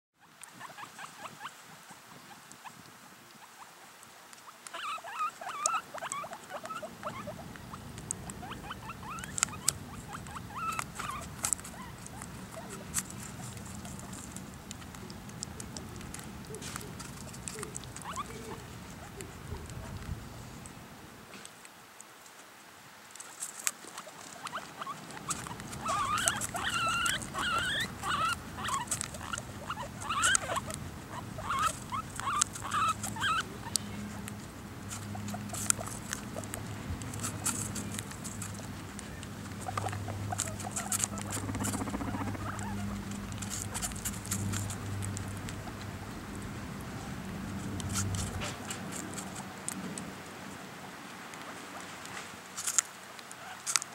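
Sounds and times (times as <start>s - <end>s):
guinea pigs crunching apple: 0.3s - 1.5s, 4.3s - 21.7s, 23.0s - 53.9s
short high squeaks: 24.4s - 30.6s.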